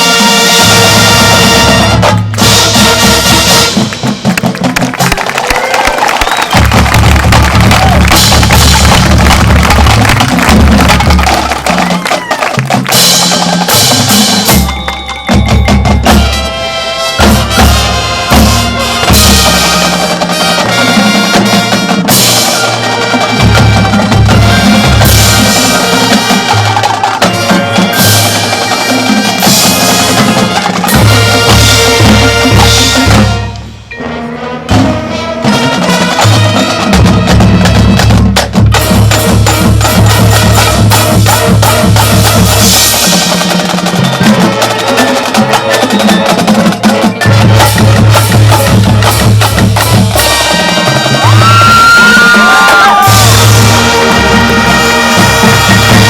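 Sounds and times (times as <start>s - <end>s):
snare drum rolls: 0.0s - 16.5s, 35.5s - 56.0s
marching band playing: 0.0s - 56.0s
bass drums: 6.5s - 16.4s, 29.4s - 33.9s, 47.3s - 56.0s.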